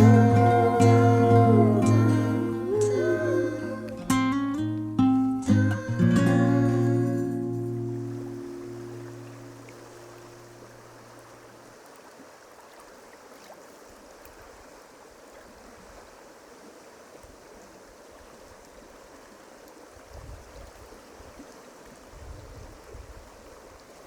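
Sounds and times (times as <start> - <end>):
river water rushing: 0.0 - 4.4, 5.7 - 22.2
low rumbles: 0.0 - 4.8.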